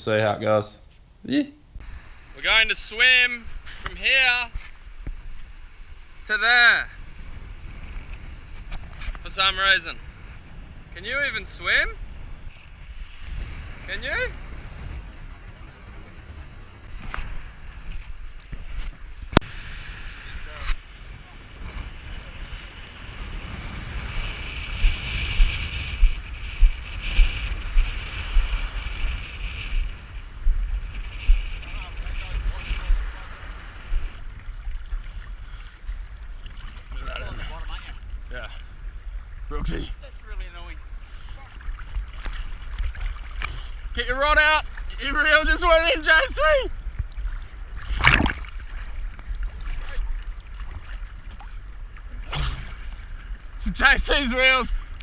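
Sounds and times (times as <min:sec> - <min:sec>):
wind and water buffeting microphone: 0:01.8 - 0:55.0
low rumble on microphone: 0:23.2 - 0:34.5
seawater sloshing and splashing: 0:34.2 - 0:38.0, 0:41.4 - 0:44.0, 0:46.8 - 0:53.6.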